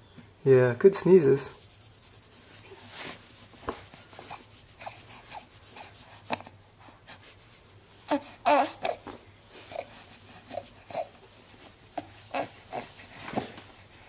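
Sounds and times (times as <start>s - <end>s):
rustling and scratching: 1.4s - 6.5s.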